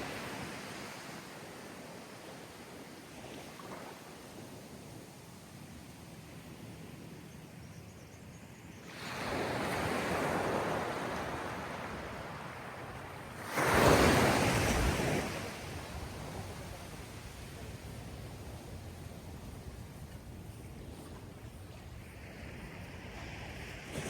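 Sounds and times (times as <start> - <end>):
waves washing in: 8.9 - 24.0.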